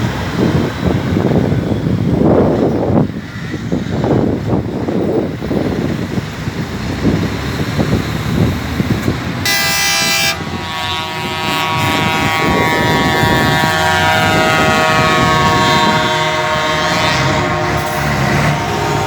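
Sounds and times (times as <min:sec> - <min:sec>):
truck engines rumbling: 0:00.0 - 0:19.0
truck air horns: 0:09.4 - 0:19.0.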